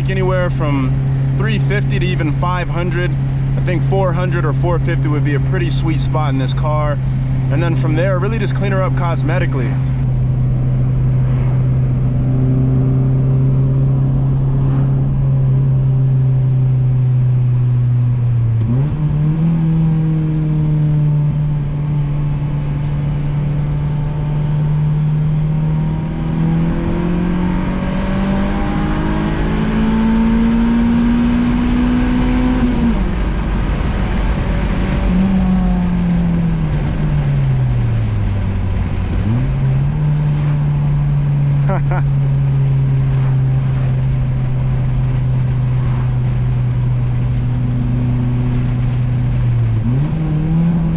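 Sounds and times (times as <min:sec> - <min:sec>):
car engine droning at cruise: 0:00.0 - 0:50.9.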